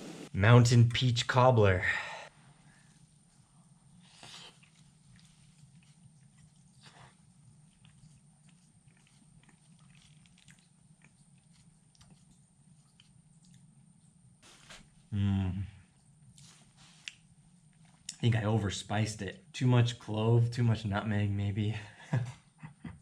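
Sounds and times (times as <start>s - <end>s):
faint low hum: 0.0s - 23.0s
quiet chewing: 2.6s - 15.1s, 15.8s - 18.2s.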